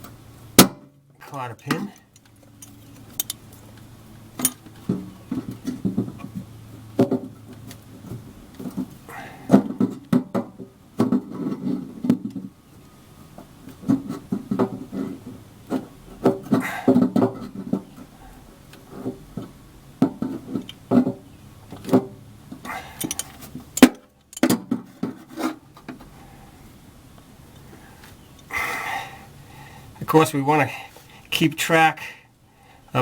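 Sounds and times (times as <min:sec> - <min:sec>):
pliers clicking and scraping metal: 0:22.9 - 0:24.5.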